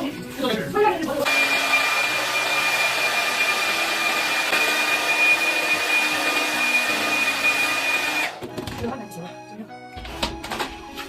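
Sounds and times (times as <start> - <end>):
hair dryer running: 1.2 - 8.9.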